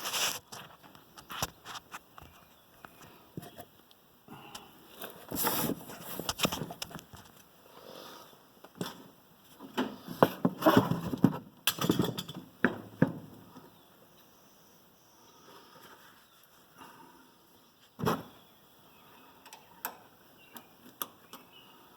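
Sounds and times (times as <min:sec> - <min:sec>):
metal parts clicking and knocking: 0:11.2 - 0:12.8.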